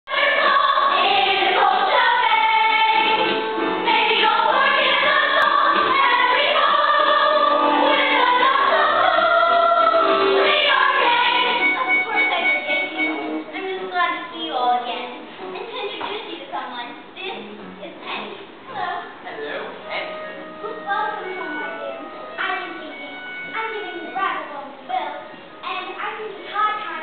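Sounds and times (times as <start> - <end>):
stage cast singing in chorus: 0.1 - 12.0.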